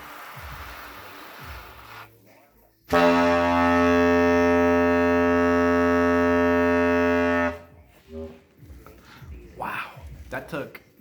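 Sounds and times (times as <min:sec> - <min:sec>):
air horn blare: 0:02.9 - 0:07.7.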